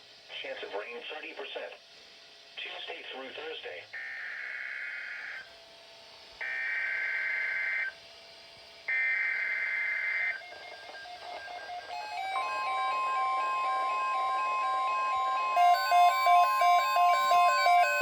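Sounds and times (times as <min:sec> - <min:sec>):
warbling digital data tones: 0:08.9 - 0:18.0.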